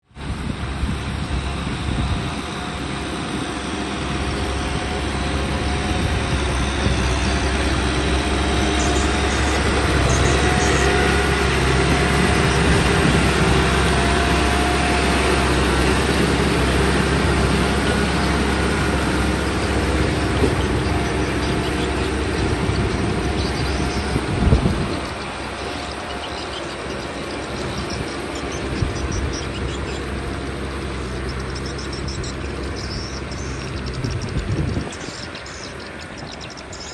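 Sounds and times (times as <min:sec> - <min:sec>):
tractor diesel engine running: 0:00.0 - 0:36.9.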